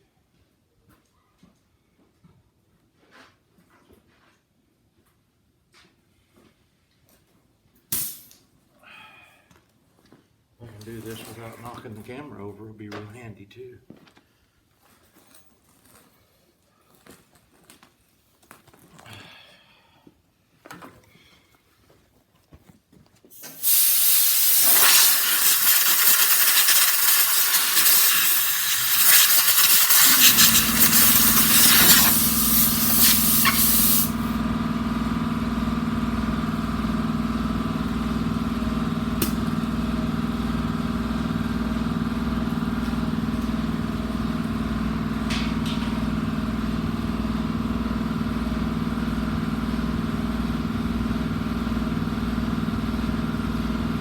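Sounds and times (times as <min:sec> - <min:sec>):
compressed air blasting from nozzle: 0:23.4 - 0:34.4
air compressor running: 0:23.4 - 0:54.0.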